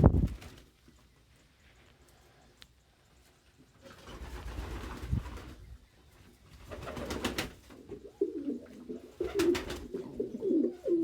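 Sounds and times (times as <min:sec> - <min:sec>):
pigeons cooing: 0:06.7 - 0:11.0.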